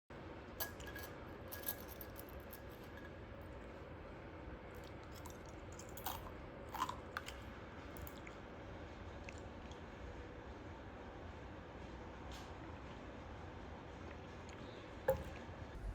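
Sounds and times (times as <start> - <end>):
faint room hum: 0.1 - 15.9
eating clicks and crunches: 4.8 - 8.4.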